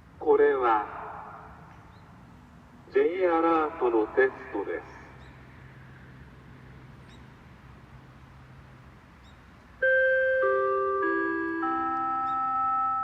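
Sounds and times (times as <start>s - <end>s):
outdoor ambience: 0.0s - 13.0s
descending loudspeaker chime: 9.8s - 13.0s.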